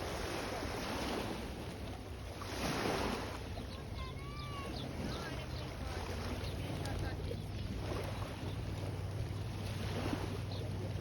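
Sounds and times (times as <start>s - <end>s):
sea waves washing in: 0.0s - 11.0s.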